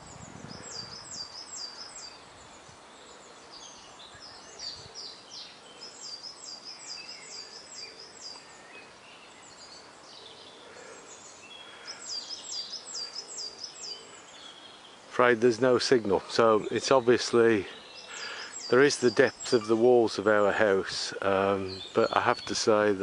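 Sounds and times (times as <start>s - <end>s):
small bird chirps: 0.0s - 15.1s
songbird singing: 0.0s - 23.0s.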